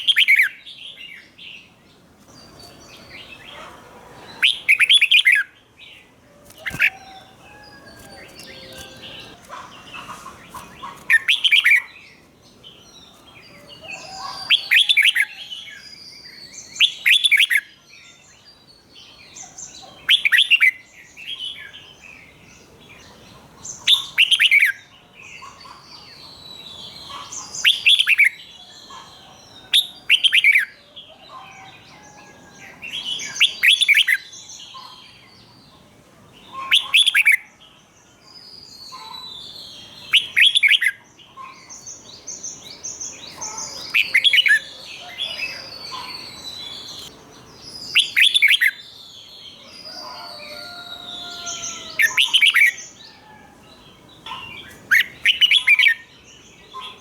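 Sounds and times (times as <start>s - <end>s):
bird song phrases: 0.0s - 57.0s.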